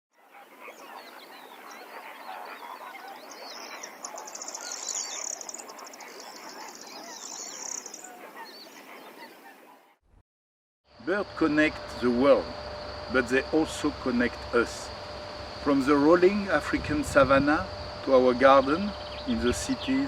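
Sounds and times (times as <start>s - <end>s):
rapid high bird trill: 0.2s - 9.5s
birds chirping: 0.2s - 9.8s, 11.4s - 20.0s.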